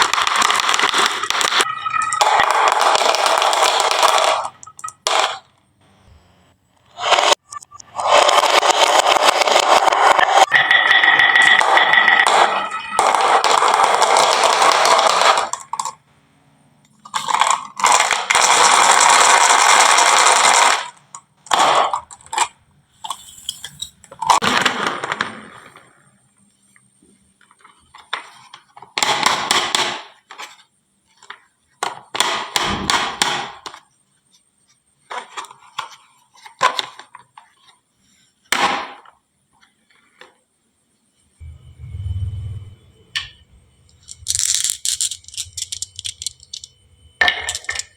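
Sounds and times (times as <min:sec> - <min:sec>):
marbles rolling down wooden run: 0:00.0 - 0:04.6, 0:08.0 - 0:16.0, 0:44.0 - 0:46.7
marbles clacking together: 0:00.0 - 0:05.4, 0:08.1 - 0:16.0, 0:43.9 - 0:47.9.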